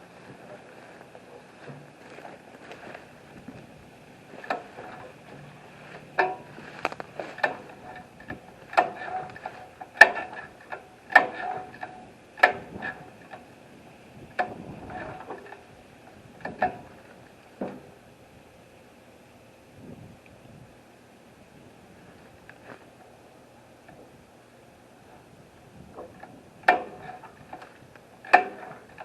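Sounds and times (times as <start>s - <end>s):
sharp knocks and clanks: 4.4s - 13.4s, 26.0s - 27.7s, 28.3s - 28.9s.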